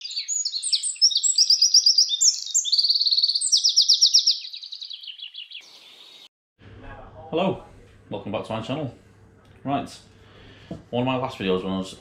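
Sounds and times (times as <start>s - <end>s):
songbird trilling: 0.0s - 6.3s.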